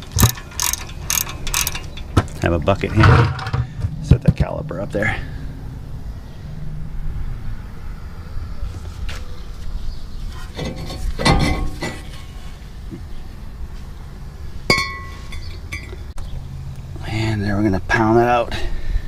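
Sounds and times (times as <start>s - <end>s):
metal tools clanking: 0.0s - 3.7s, 10.5s - 12.4s, 14.7s - 16.1s
steady low rumble: 0.0s - 10.3s
ringing metal clink: 14.7s - 16.0s.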